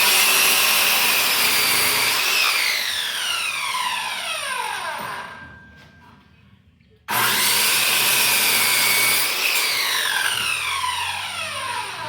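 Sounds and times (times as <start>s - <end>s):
power tool motor whining: 7.1s - 12.0s.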